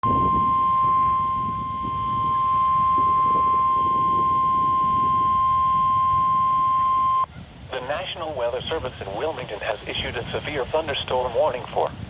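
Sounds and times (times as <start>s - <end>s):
steady alarm tone: 0.0s - 7.3s.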